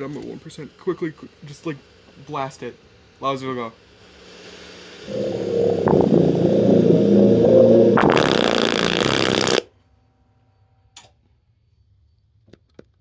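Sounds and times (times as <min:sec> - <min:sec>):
distorted loudspeaker buzz: 0:05.1 - 0:09.6.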